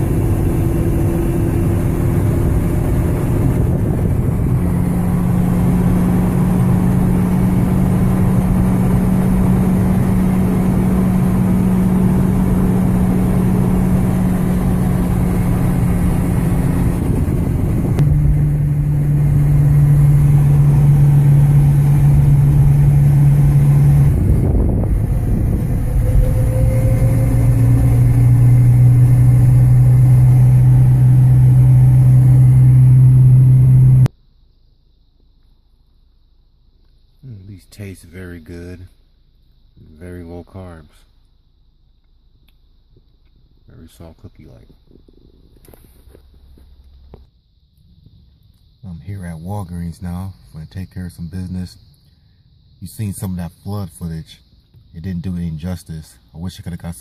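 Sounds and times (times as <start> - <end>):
tyre road noise: 0.0 - 34.1, 36.8 - 52.0
car engine drone: 0.0 - 57.0.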